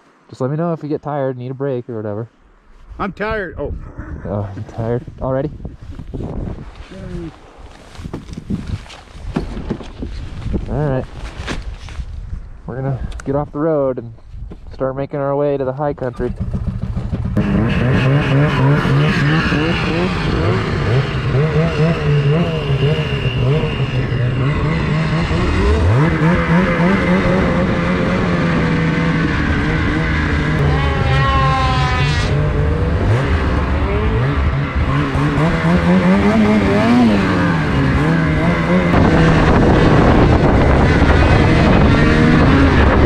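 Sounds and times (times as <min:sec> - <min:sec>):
snowmobile engines revving: 0:03.0 - 0:05.5, 0:15.6 - 0:43.0.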